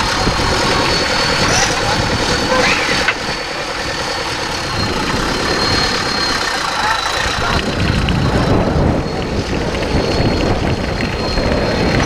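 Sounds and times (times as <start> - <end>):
people's voices: 0.0 - 12.0
vehicle engine running: 0.0 - 12.0.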